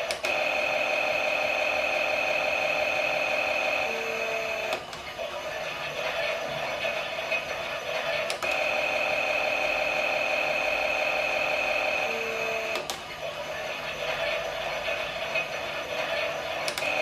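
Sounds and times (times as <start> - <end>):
toy washing machine motor whirring: 0.0 - 17.0.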